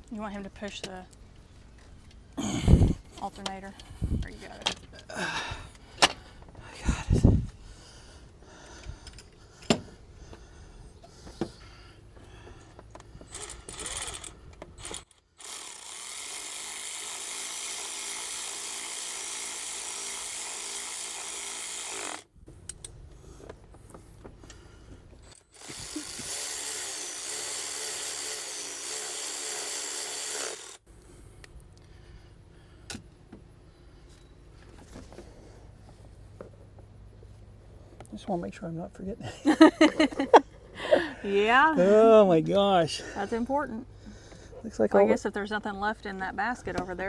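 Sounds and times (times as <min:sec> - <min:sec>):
cordless power tool driving bolts: 0:12.4 - 0:23.0, 0:25.2 - 0:30.8
metallic clicks of tools: 0:13.0 - 0:15.3, 0:22.6 - 0:23.0.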